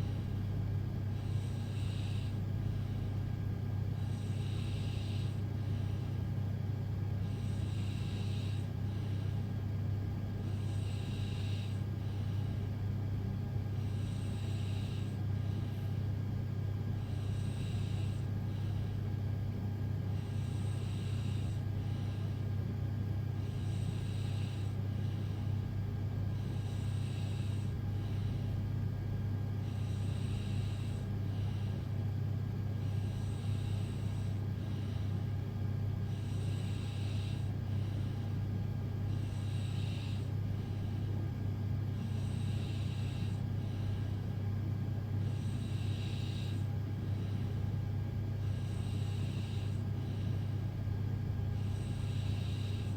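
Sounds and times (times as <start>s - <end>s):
steady low hum: 0.0s - 52.9s
woman snoring lightly: 20.1s - 22.4s, 23.4s - 28.6s, 29.6s - 31.9s, 32.6s - 35.3s, 36.0s - 44.3s, 45.2s - 47.7s, 48.4s - 50.5s, 51.6s - 52.9s.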